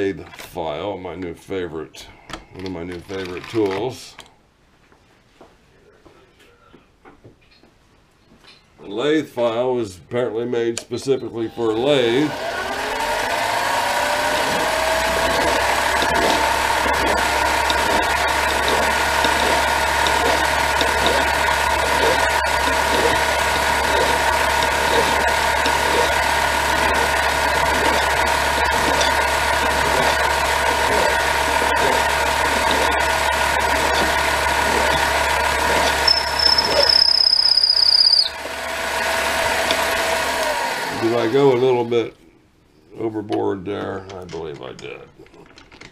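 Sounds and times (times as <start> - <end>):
lathe motor whine: 11.5 - 41.9
low hum: 14.1 - 40.1
high-pitched metal squeal: 33.8 - 38.4.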